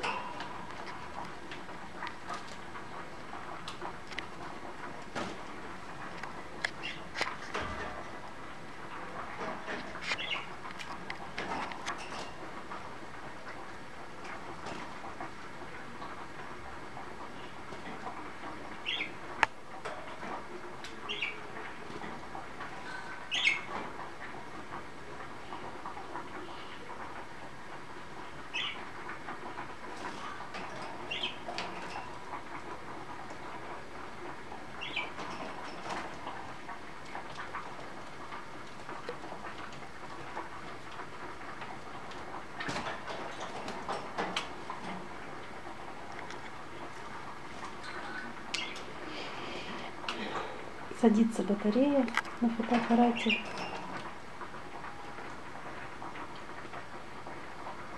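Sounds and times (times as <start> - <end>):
budgerigars chirping: 23.3 - 23.7, 28.5 - 28.8, 34.8 - 35.1.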